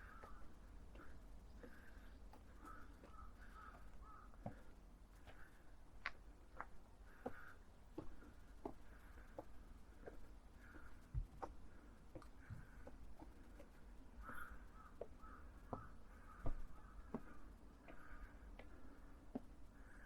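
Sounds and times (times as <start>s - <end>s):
distant crow cawing: 0.0s - 5.5s, 14.2s - 19.0s
footsteps on a path: 0.0s - 20.0s.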